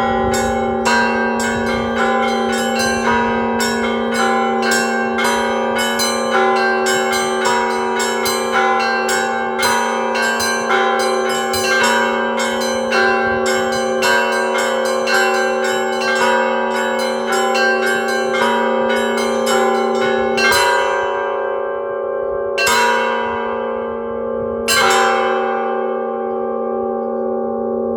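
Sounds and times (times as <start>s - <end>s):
church bells ringing: 0.0s - 27.9s.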